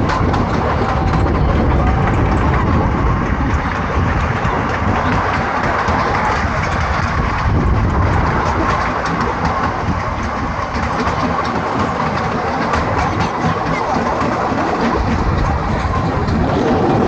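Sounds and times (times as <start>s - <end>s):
small rattles and clicks: 0.0s - 17.0s
vehicle engine low rumble: 0.0s - 17.0s.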